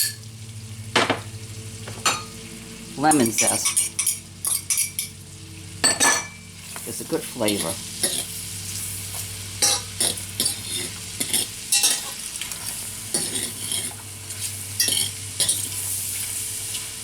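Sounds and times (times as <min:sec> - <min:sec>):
food sizzling in a frying pan: 0:00.0 - 0:17.0
utensil scraping and clinking pan: 0:07.4 - 0:08.4, 0:09.6 - 0:15.8.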